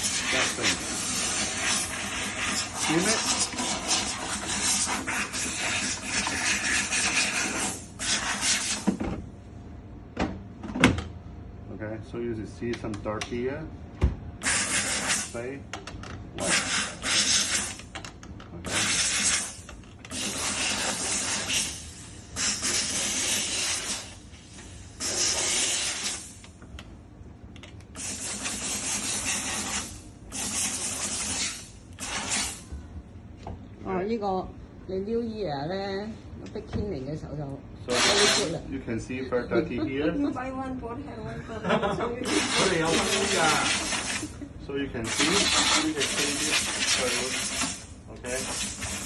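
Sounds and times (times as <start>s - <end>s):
steam cleaner hissing: 0.0s - 8.8s, 14.4s - 15.5s, 16.4s - 17.9s, 18.7s - 26.5s, 28.0s - 32.7s, 37.9s - 38.6s, 41.8s - 49.0s.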